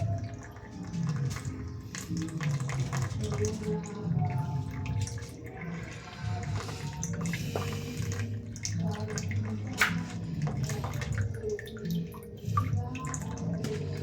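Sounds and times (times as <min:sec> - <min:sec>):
background music: 0:00.0 - 0:14.0
water splashing and dripping: 0:00.0 - 0:14.0.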